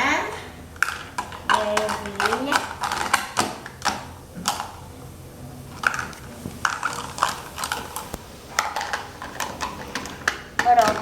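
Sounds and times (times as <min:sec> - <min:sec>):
plastic toys clicking and knocking: 0:00.8 - 0:04.7, 0:08.6 - 0:11.0.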